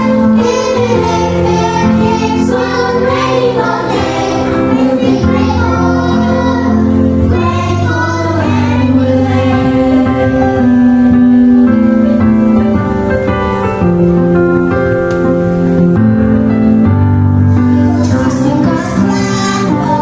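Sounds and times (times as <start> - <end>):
child singing: 0.0 - 10.8, 17.6 - 20.0
instrumental accompaniment: 0.0 - 20.0.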